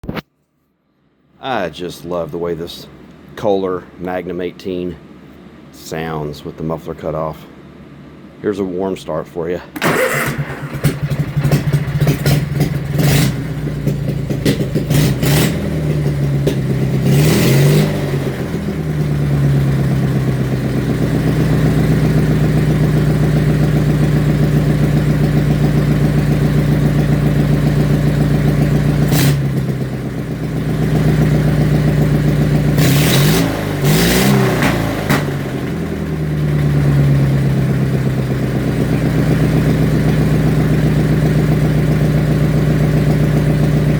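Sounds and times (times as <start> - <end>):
engine idling without muffler: 9.8 - 32.8, 33.5 - 43.9
engine revving: 9.8 - 43.9.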